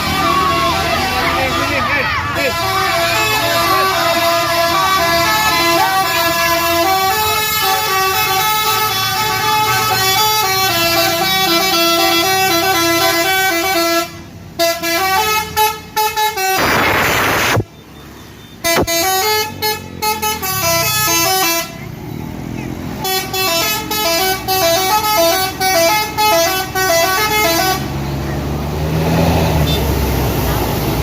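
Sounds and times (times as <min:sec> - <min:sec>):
multi-tone musical air horn: 0:02.4 - 0:17.6, 0:18.6 - 0:21.8, 0:23.0 - 0:28.0.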